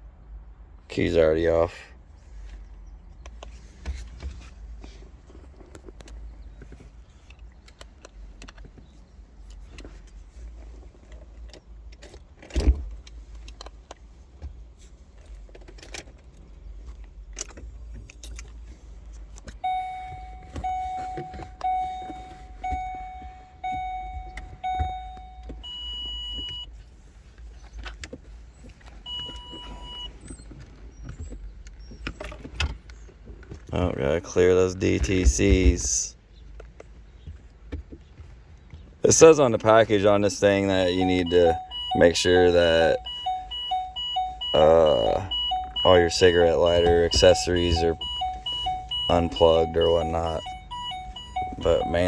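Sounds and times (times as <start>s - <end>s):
keys jangling in ignition: 17.3s - 26.6s, 40.9s - 52.0s
high beeps: 19.6s - 26.7s, 29.1s - 30.1s, 40.8s - 52.0s
electronic chime: 41.0s - 52.0s.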